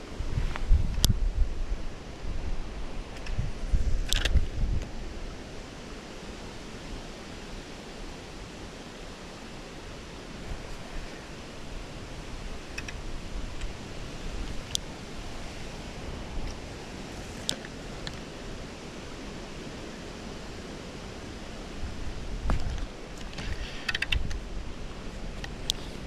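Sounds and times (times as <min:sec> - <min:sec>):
river water rushing: 0:04.9 - 0:26.0
faint clicks: 0:12.7 - 0:13.0, 0:22.5 - 0:24.4.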